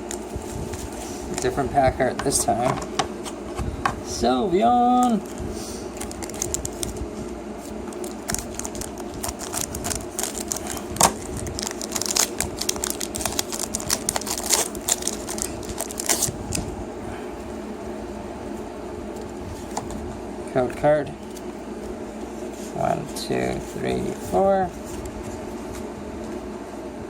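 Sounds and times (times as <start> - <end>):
steady low hum: 0.0 - 27.0
cards being handled: 5.0 - 7.0, 7.6 - 16.7
foil wrapper crinkling and tearing: 5.9 - 7.0, 7.9 - 16.7.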